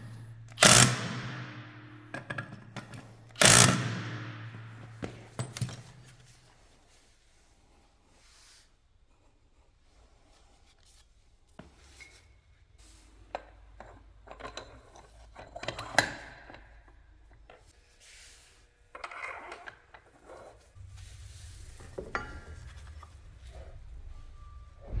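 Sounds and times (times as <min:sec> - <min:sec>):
short hissing rubs: 0:08.1 - 0:08.8, 0:17.9 - 0:18.7
rubbing and scraping on metal parts: 0:11.8 - 0:24.0.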